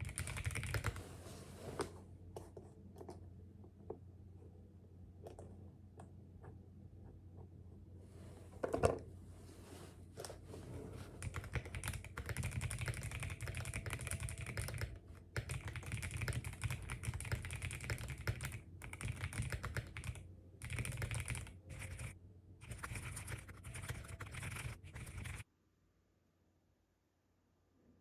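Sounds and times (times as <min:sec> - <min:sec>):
computer keyboard typing: 0:00.0 - 0:01.0, 0:11.2 - 0:25.4.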